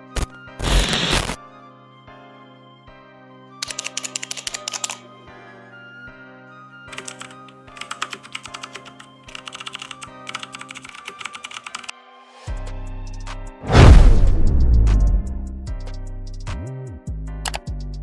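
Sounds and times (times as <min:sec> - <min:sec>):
music with sustained notes: 0:01.4 - 0:03.8
rapid clicking: 0:03.6 - 0:05.0, 0:06.9 - 0:11.9.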